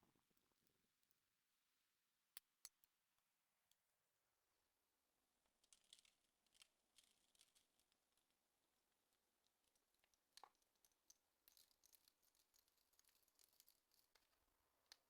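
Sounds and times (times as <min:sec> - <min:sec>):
faint clicks and crackles: 0:05.4 - 0:15.0.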